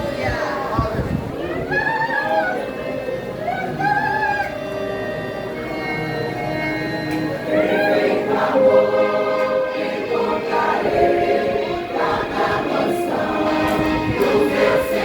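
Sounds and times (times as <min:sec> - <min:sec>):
orchestral backing track: 0:02.0 - 0:15.0
choir singing a hymn: 0:07.4 - 0:15.0.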